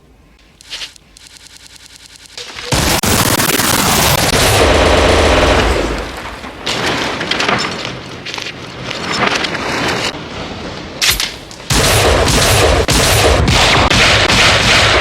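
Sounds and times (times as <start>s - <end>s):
rapid gunfire: 1.2s - 6.0s, 11.7s - 15.0s.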